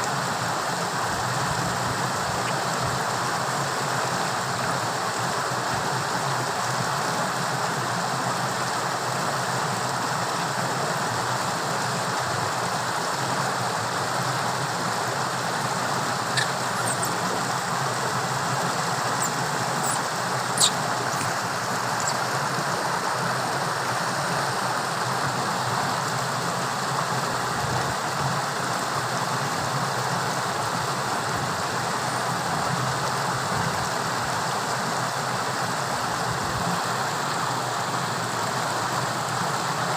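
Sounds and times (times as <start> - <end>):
torrential water rushing: 0.0 - 39.9
sharp high clicks: 16.3 - 17.5, 19.1 - 22.2.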